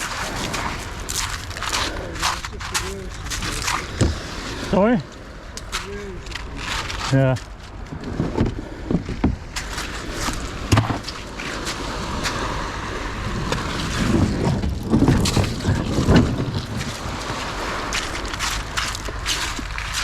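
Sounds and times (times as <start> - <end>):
water sloshing around hull: 0.0 - 20.0
wind on microphone: 0.0 - 20.0
knocks and thumps: 7.9 - 9.4, 10.7 - 11.1, 14.4 - 16.5.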